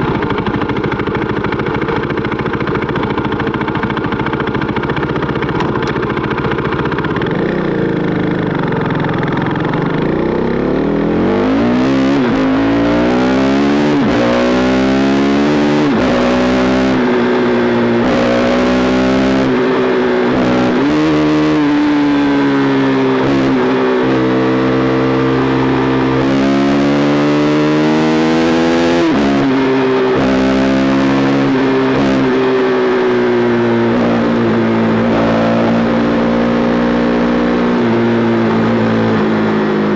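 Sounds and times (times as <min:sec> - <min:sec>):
motorcycle engine accelerating: 0:00.0 - 0:39.9.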